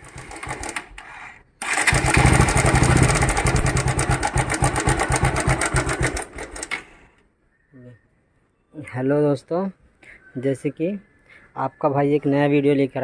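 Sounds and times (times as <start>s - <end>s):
motorcycle engine running: 1.7s - 6.6s.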